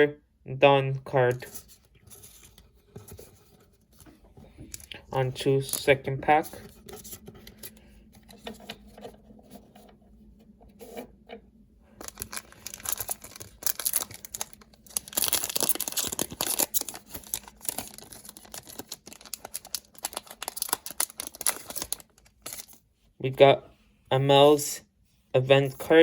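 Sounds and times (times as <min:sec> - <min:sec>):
foil pack tearing and crinkling: 0:12.0 - 0:22.8.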